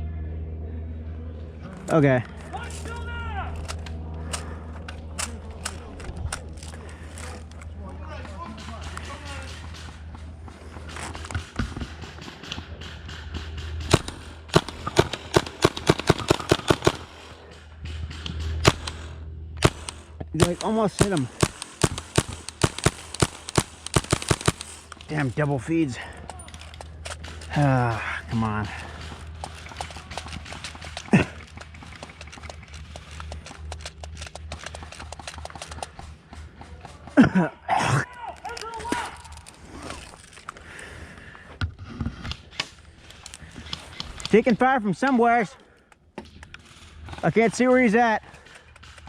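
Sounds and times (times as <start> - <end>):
steady low rumble: 0.0 - 37.7
sharp clicks and knocks: 8.3 - 25.2, 28.8 - 37.0
airsoft rifle shots: 11.0 - 17.4, 18.2 - 25.2.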